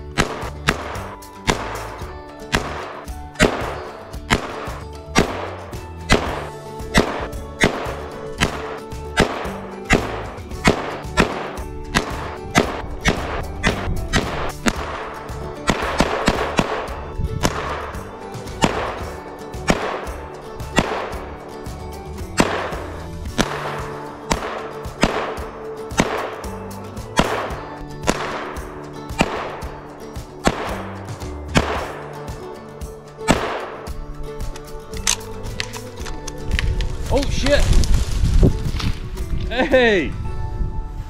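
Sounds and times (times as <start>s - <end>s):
background music: 0.0s - 41.0s
rifle shots echoing: 0.1s - 21.3s, 22.4s - 32.4s, 33.2s - 34.0s.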